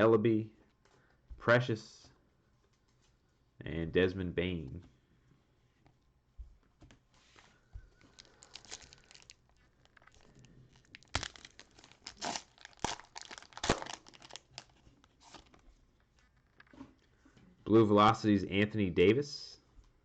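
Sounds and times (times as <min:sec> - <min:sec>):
cellophane wrapper crinkling: 0:07.9 - 0:15.6.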